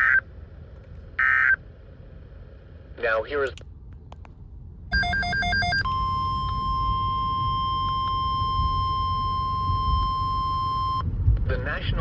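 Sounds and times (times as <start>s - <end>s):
steady warning alarm tone: 0.0s - 0.2s, 1.2s - 1.6s, 4.9s - 11.0s
warbling digital data tones: 0.0s - 0.2s, 4.9s - 11.0s.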